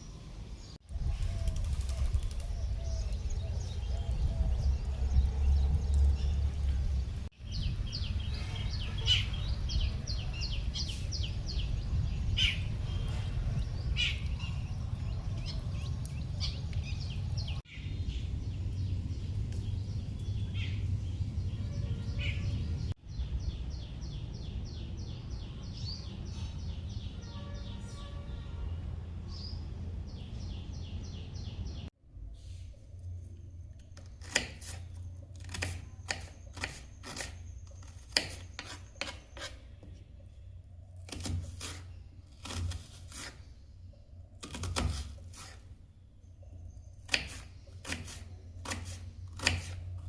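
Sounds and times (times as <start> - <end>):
birds chirping: 0.0 - 31.9
steady low rumble: 0.8 - 25.0.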